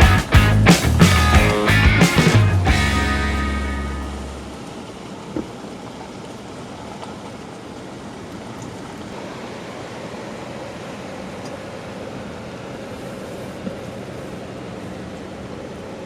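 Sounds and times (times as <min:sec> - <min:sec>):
river water rushing: 0:02.2 - 0:12.8.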